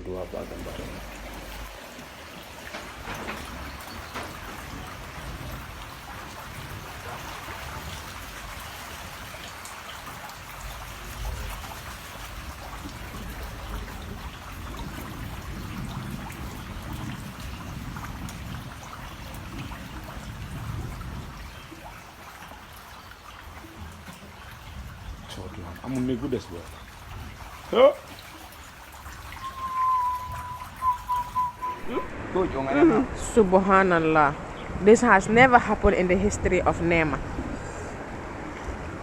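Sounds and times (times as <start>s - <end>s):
low rumbling: 0.0s - 8.4s, 29.4s - 39.0s
hiss of water: 0.0s - 33.2s.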